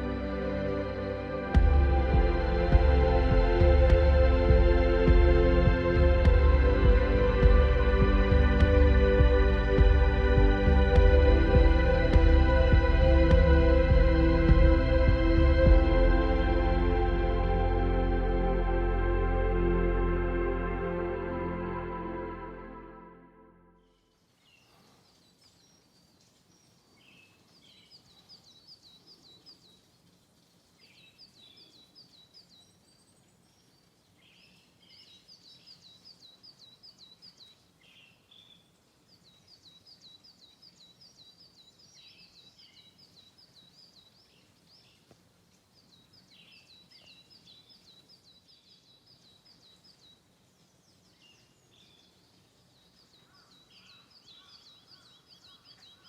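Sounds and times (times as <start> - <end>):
songbirds singing: 23.8 - 56.0.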